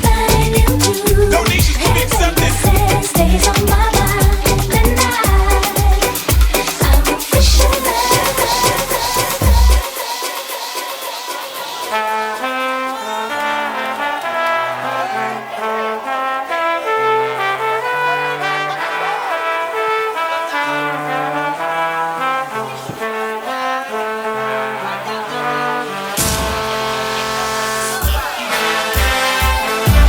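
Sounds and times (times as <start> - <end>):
dance music breakdown: 0.0 - 14.3, 26.1 - 30.0.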